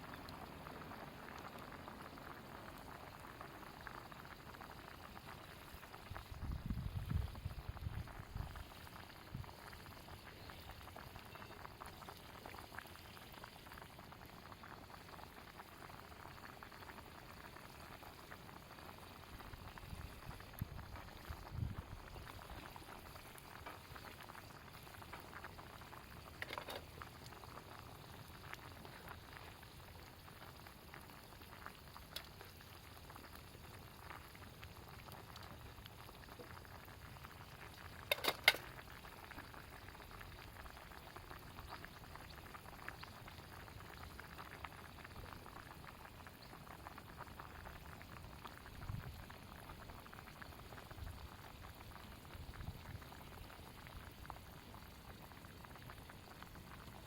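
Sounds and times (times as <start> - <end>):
campfire crackles: 0.0 - 57.0
food bubbling in a pan: 0.0 - 57.0.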